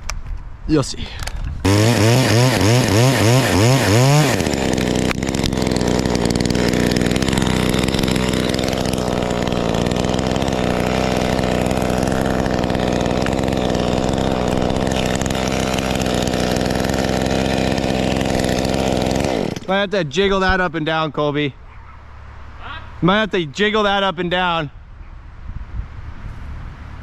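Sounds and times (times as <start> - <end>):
chainsaw idling: 1.6 - 19.9.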